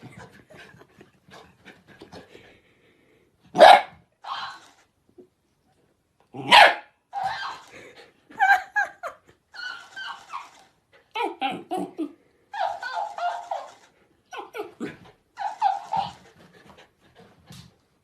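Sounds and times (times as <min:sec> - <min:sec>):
dog barking: 0:03.6 - 0:04.6, 0:06.4 - 0:07.0.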